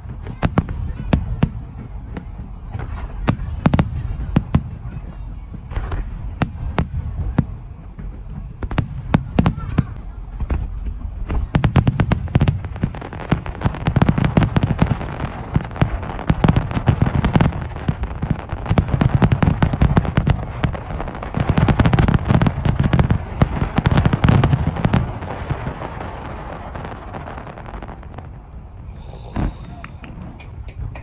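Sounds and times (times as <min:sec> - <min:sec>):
fireworks cracks and crackling: 0:00.0 - 0:31.0
fireworks deep booms: 0:00.0 - 0:31.0.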